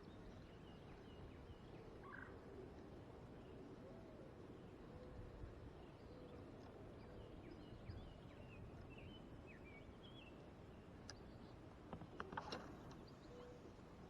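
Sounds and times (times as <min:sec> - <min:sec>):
low steady hiss: 0:00.0 - 0:14.0.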